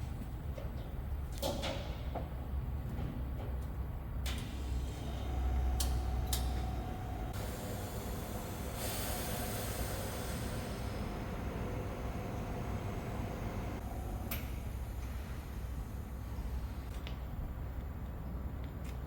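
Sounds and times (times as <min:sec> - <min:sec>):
hiss: 0:07.4 - 0:11.1.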